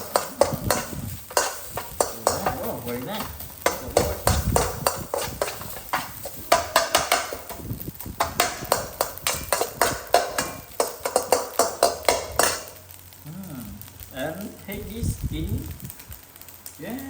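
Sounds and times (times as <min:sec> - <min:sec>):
utensil scraping a frying pan: 0:00.0 - 0:12.8.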